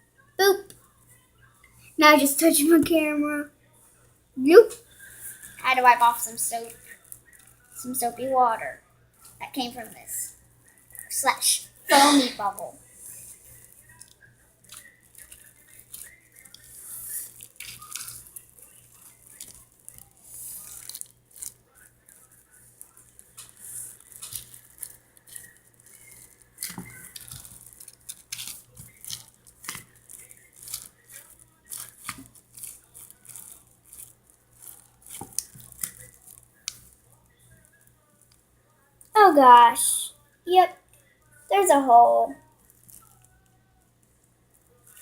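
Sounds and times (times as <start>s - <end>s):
plastic bag crinkling: 14.7s - 36.9s.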